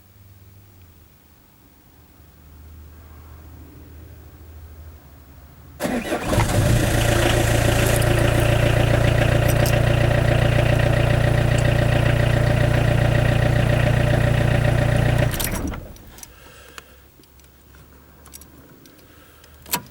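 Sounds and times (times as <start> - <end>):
engine starter cranking: 5.8 - 16.5
car engine idling: 5.8 - 16.6.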